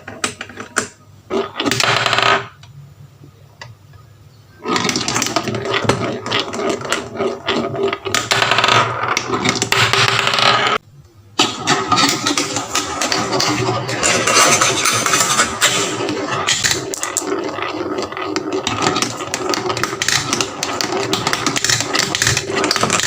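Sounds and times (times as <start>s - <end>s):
marbles rattling down wooden track: 4.6s - 10.8s, 11.6s - 23.0s.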